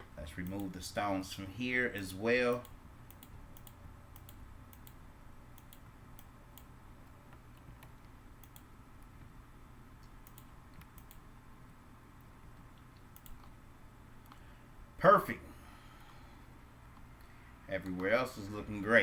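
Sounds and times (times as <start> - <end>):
steady low hum: 0.0 - 19.0
mouse and keyboard clicks: 13.0 - 13.6.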